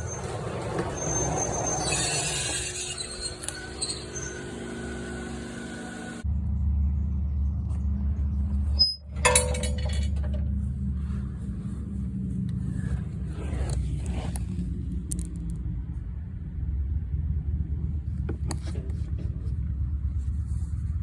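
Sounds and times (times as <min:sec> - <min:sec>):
car engine low rumble: 0:00.0 - 0:21.0
high-pitched screech: 0:01.0 - 0:06.1.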